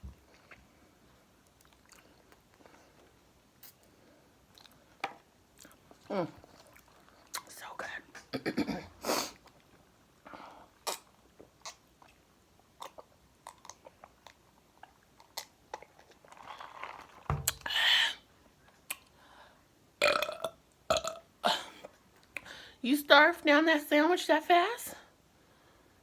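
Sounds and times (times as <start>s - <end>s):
chewing chicken wings: 1.4s - 3.0s, 12.8s - 17.1s
wet mouth clicks and smacks: 6.7s - 7.5s, 12.8s - 16.2s, 17.4s - 17.7s, 18.9s - 19.1s
burp: 20.0s - 21.7s.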